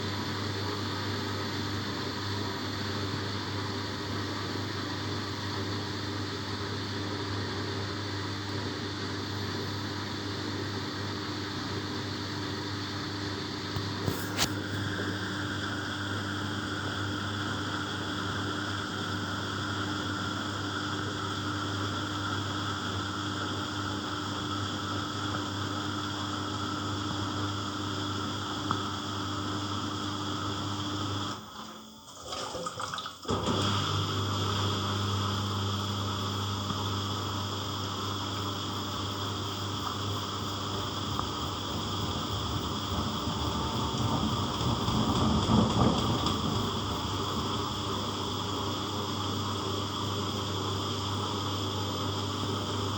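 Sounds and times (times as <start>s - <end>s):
washing machine hum: 0.0s - 52.9s.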